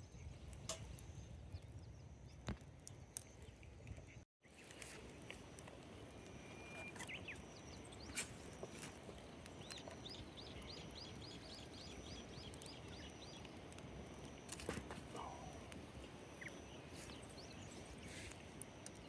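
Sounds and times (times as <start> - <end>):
steady outdoor hiss: 0.0 - 19.0
bird chirping: 6.3 - 13.6, 15.2 - 19.0.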